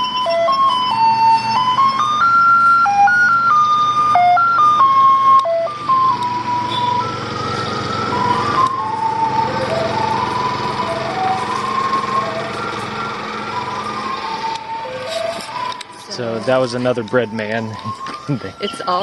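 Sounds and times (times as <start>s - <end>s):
vehicle engine running: 0.0s - 18.6s
electronic jingle over loudspeaker: 14.8s - 19.0s.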